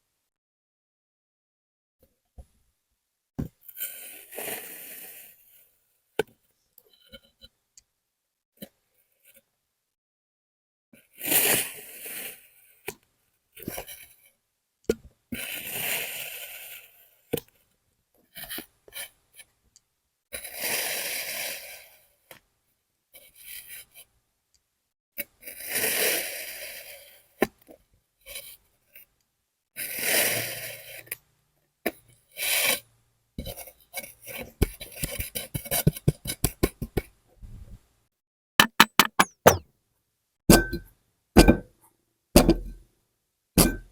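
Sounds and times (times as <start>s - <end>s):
small clicks and taps: 38.6s - 39.6s.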